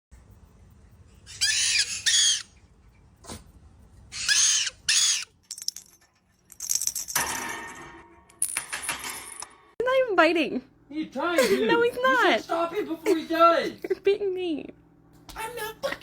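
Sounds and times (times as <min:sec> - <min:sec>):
parrot squawking: 0:01.2 - 0:02.6, 0:04.1 - 0:05.3.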